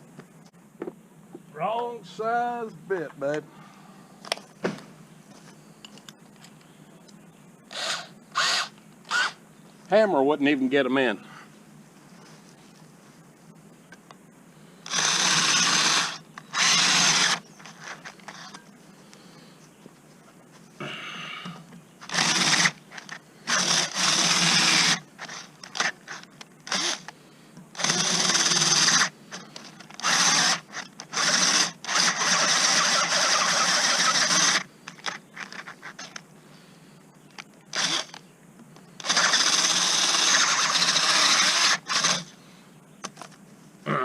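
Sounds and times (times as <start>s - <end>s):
electric drill boring through steel: 7.7s - 9.4s, 14.8s - 17.4s, 22.1s - 22.8s, 23.5s - 25.9s, 26.7s - 27.1s, 27.8s - 29.1s, 30.0s - 34.7s, 37.8s - 38.2s, 39.0s - 42.3s.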